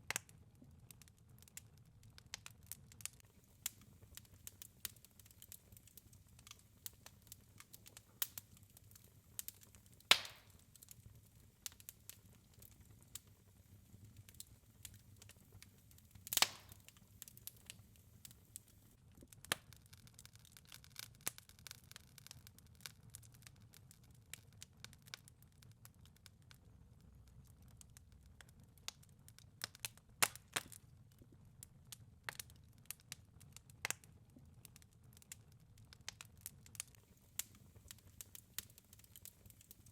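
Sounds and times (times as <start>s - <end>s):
wood fire crackling: 0.0s - 39.9s
loud fire pops: 10.1s - 10.6s, 16.2s - 17.7s.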